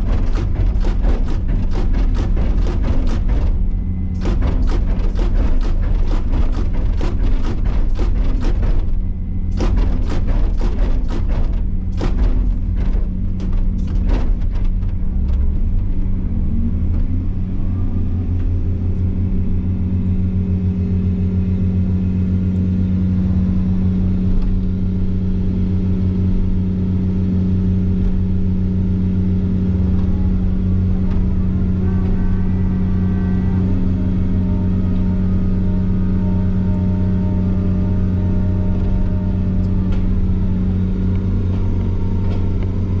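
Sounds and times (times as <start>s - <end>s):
sharp knocks: 0.0s - 14.6s
heavy machine engine running: 0.0s - 43.0s.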